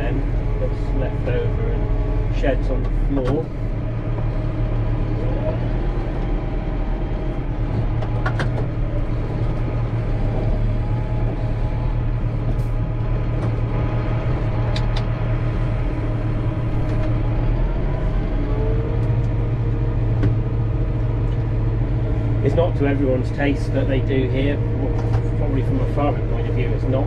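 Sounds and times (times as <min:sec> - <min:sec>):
tractor engine under load: 0:00.0 - 0:27.0
sharp clicks and knocks: 0:07.7 - 0:08.8, 0:14.7 - 0:15.1, 0:24.9 - 0:25.3.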